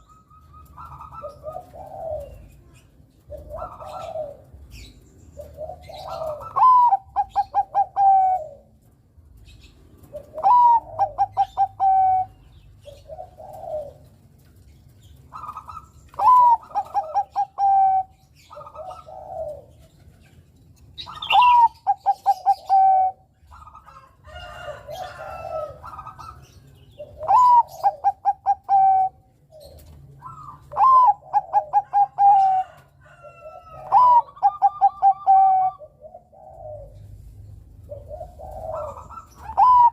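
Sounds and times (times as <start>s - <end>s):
dove cooing: 0.0s - 39.9s.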